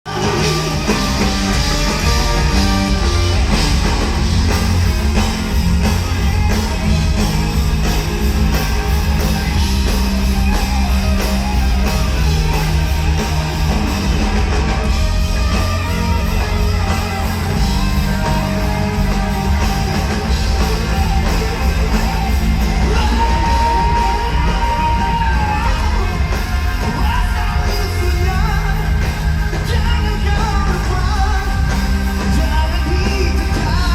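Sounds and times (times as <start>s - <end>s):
live rock band playing: 0.0s - 33.9s
person singing: 0.1s - 4.1s, 15.3s - 33.9s.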